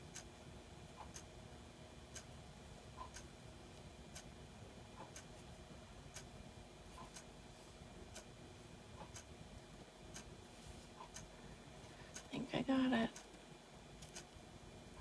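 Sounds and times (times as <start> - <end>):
clock ticking: 0.9 - 1.3, 2.1 - 2.3, 3.0 - 3.3, 5.0 - 5.3, 6.1 - 6.3, 8.1 - 8.3, 8.9 - 9.4, 10.1 - 10.3, 11.0 - 11.3.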